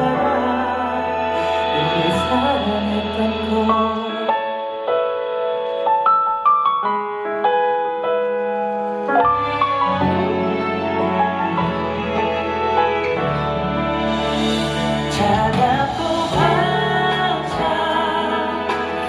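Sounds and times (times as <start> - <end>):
bass: 0.0 - 4.9, 9.1 - 19.0
keyboard melody: 0.0 - 19.0.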